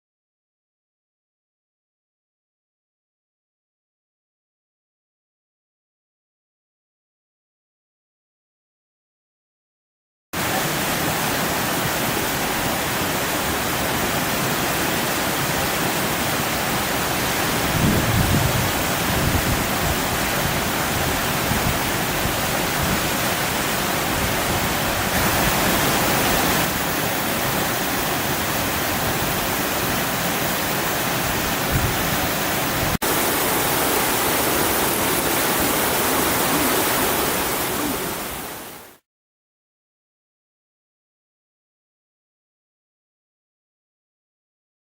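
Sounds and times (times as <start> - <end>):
waterfall rushing over rock: 10.4 - 39.0.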